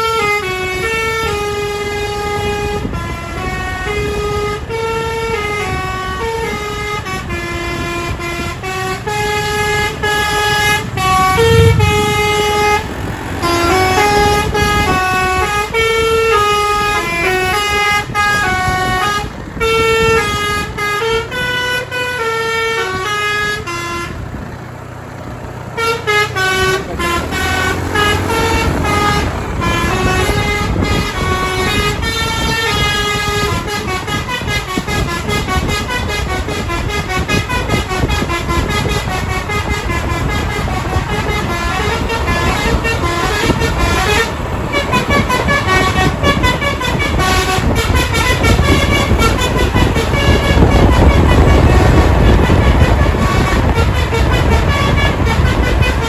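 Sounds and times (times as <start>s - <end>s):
multi-tone bus air horn: 0.0s - 56.0s.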